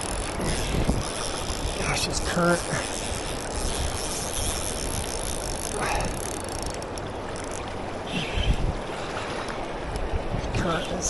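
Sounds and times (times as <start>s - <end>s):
fishing reel ticking: 0.0s - 7.8s.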